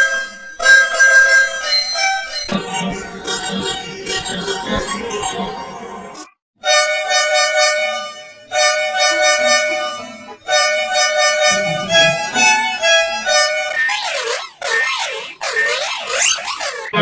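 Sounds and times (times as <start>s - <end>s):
musical bus horn tune: 6.6s - 13.9s.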